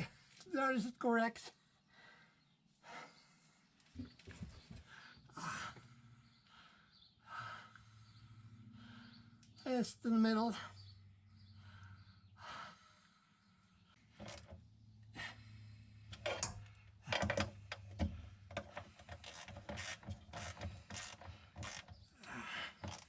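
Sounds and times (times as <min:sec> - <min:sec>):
hand tools clicking and clattering: 0:16.1 - 0:22.0.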